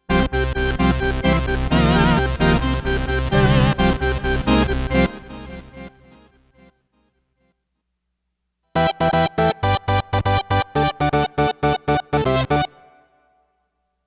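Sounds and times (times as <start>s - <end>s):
synthesizer staccato stabs: 0.1s - 5.9s.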